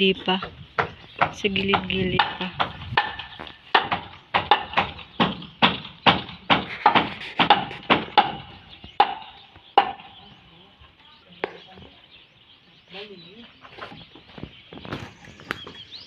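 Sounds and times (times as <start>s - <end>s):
hammer nailing wood: 0.4s - 10.2s.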